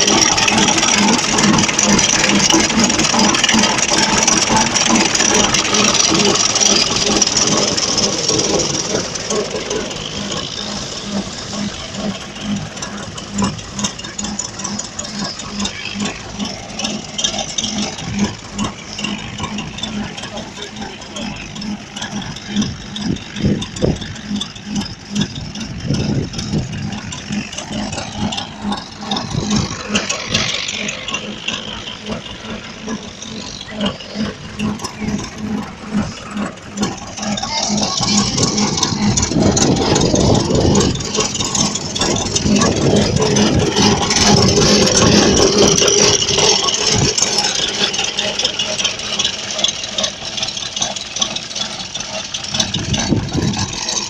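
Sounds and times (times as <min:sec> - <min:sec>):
light rattle: 0:00.0 - 0:54.0
tractor engine running under load: 0:00.0 - 0:54.0.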